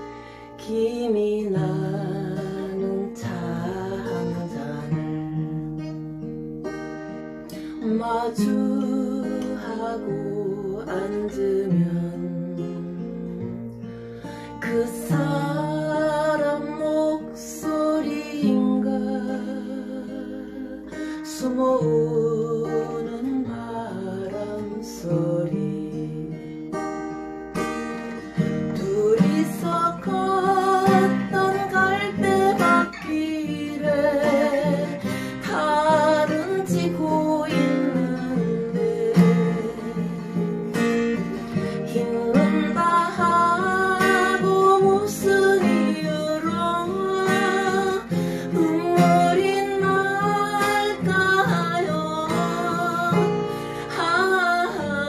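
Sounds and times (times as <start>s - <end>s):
acoustic guitar strumming chords: 0.0s - 55.0s.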